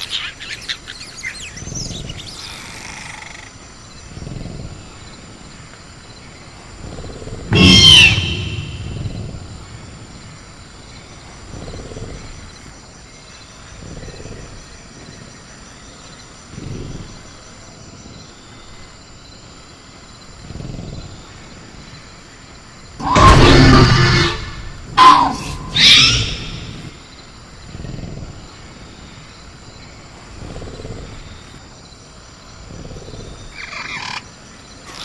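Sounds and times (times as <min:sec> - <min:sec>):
cricket drone: 0:00.0 - 0:35.0
jungle ambience: 0:00.0 - 0:35.0
dinosaur growls: 0:06.8 - 0:09.9.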